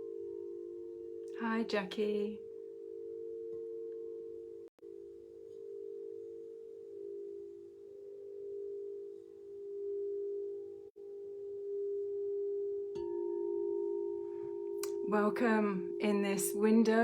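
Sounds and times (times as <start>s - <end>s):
crystal singing bowl ringing: 0.0s - 17.0s
lower bowl note: 0.0s - 17.0s.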